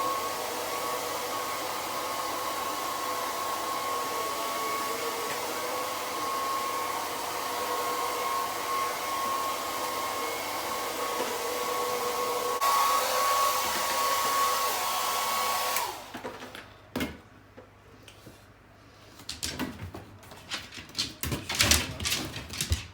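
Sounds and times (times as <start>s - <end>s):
hair dryer blowing: 0.0s - 16.7s.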